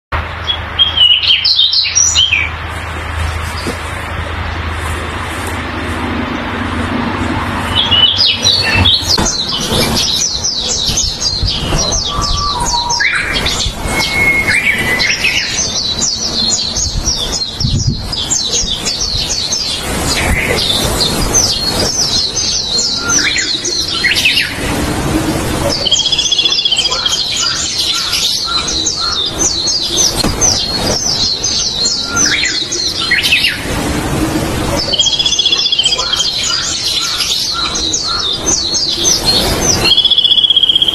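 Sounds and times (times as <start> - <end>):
bird singing rapid high notes: 7.6 - 24.7, 25.7 - 33.7, 34.8 - 40.9.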